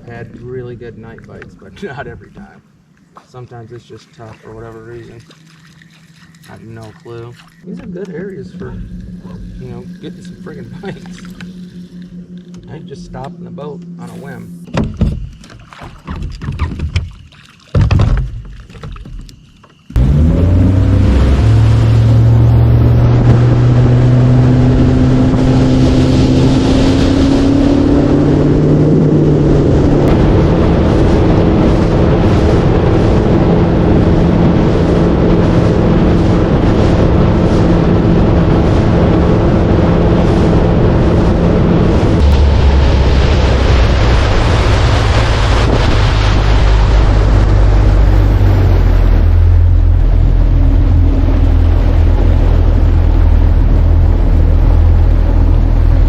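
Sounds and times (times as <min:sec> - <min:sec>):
outboard motor running: 0:03.8 - 0:56.0
knocks: 0:14.6 - 0:15.5, 0:17.7 - 0:19.1
wind over microphone: 0:20.2 - 0:56.0.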